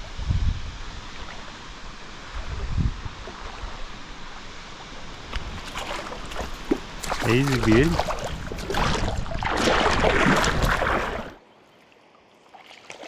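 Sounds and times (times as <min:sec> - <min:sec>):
wind thumps on microphone: 0:00.0 - 0:01.5, 0:02.3 - 0:04.0, 0:05.1 - 0:11.2
running water: 0:00.0 - 0:13.0.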